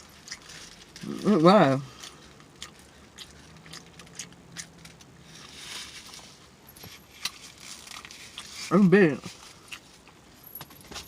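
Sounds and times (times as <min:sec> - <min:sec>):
person chewing and lip-smacking: 0:00.0 - 0:05.1, 0:09.3 - 0:10.2.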